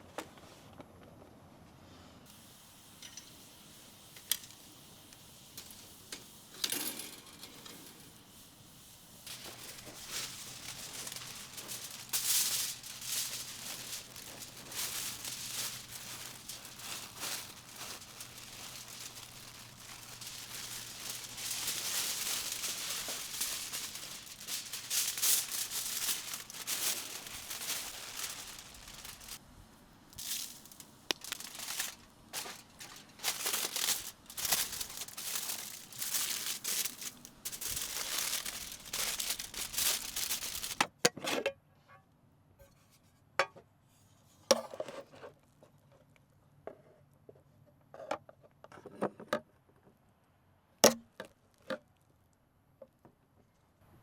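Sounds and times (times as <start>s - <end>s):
rustling and crinkling: 2.3s - 29.4s, 30.1s - 40.9s.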